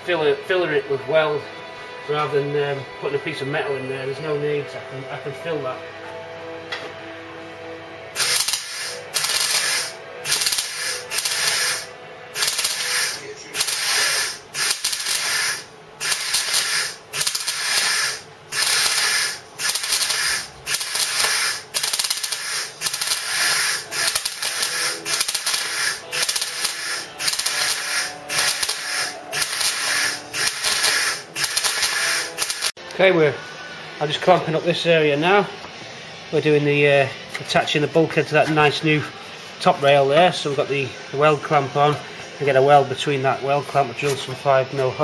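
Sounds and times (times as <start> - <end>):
welder crackling: 8.2 - 32.8.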